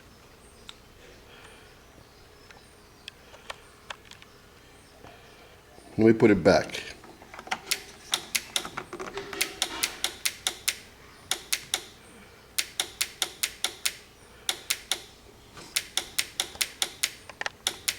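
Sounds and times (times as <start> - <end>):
relay clicking rapidly: 7.6 - 12.0, 12.6 - 17.9.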